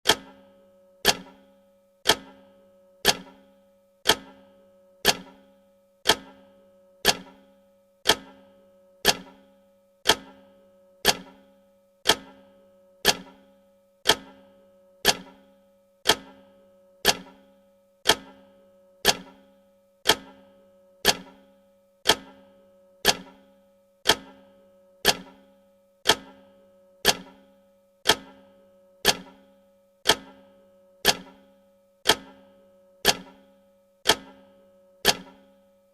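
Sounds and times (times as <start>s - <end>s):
clock ticking: 0.1s - 0.4s, 1.0s - 3.4s, 4.0s - 5.4s, 6.0s - 7.4s, 8.0s - 9.4s, 10.0s - 11.4s, 12.0s - 13.4s, 14.0s - 15.4s, 16.0s - 19.4s, 20.0s - 23.4s, 24.0s - 35.6s.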